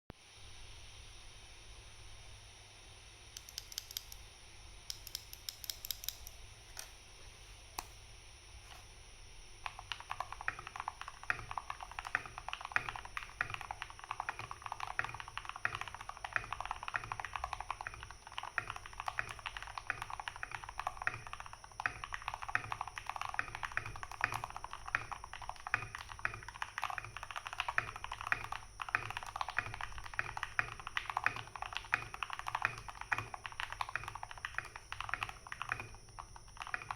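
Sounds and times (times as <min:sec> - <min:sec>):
mechanical keyboard typing: 0:03.4 - 0:04.2, 0:04.9 - 0:06.9, 0:09.6 - 0:36.9.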